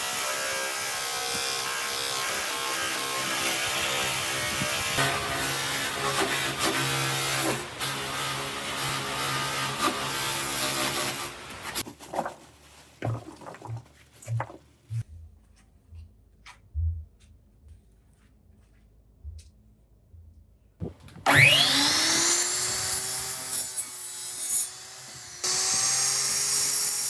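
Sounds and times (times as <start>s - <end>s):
electric power tool running: 21.3s - 27.0s.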